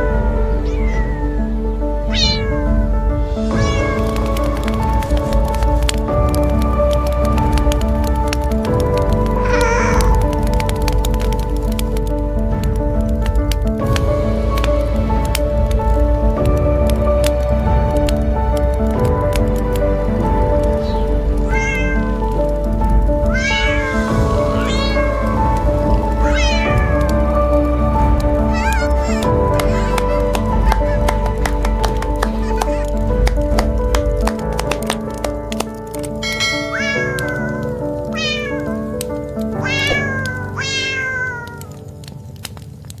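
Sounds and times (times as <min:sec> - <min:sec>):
kitten meowing: 0:00.0 - 0:02.8, 0:03.5 - 0:04.6, 0:09.4 - 0:10.4, 0:20.8 - 0:22.3, 0:23.3 - 0:27.1, 0:28.0 - 0:33.6, 0:36.3 - 0:38.8, 0:39.5 - 0:41.8
background music: 0:00.0 - 0:43.0.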